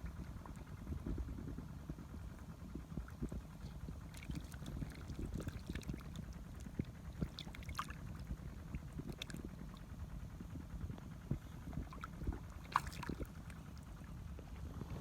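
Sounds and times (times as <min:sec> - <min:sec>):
muddy water sloshing and splashing: 0:04.0 - 0:09.8, 0:11.6 - 0:13.9.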